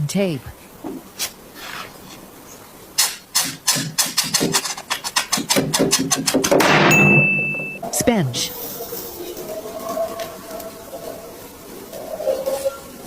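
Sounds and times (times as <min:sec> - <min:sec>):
tape pulled off roll crackling: 0:01.2 - 0:02.2, 0:03.0 - 0:06.6.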